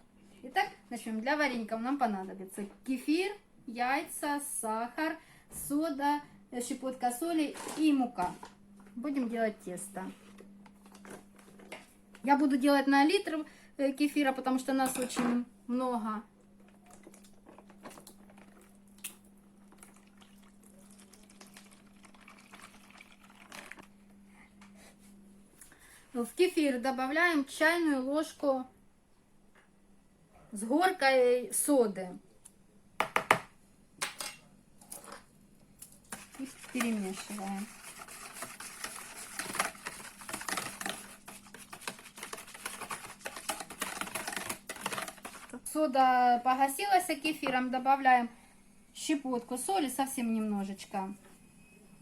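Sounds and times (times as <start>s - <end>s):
liquid pouring into bowl: 19.6s - 23.9s.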